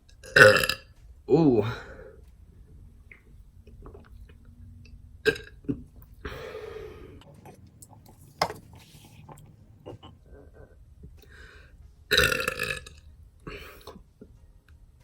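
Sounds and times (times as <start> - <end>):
man burping: 0.2 - 0.8, 12.1 - 12.9.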